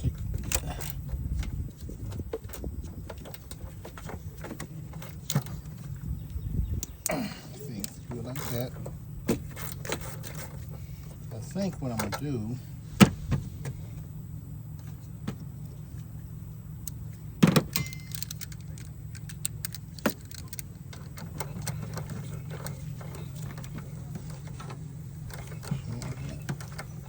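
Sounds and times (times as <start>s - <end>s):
metal tools clinking: 17.7s - 27.0s.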